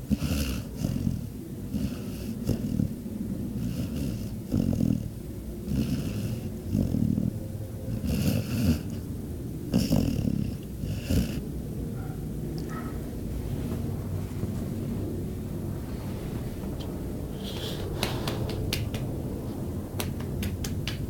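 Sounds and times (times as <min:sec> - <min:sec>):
dog snoring: 0:00.0 - 0:09.1, 0:09.7 - 0:11.4
nasal hiss of breath: 0:17.3 - 0:18.5.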